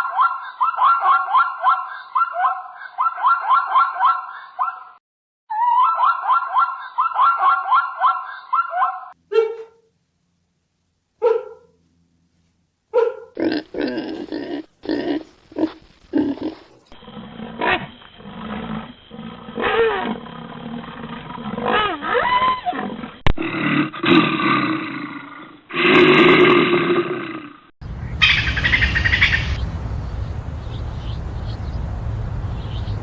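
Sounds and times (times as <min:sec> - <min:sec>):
animal calls roars and grunts: 0:13.3 - 0:33.0.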